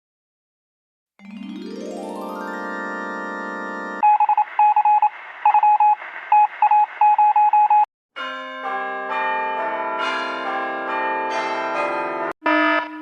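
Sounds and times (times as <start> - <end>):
short electronic beeps: 4.0 - 7.9.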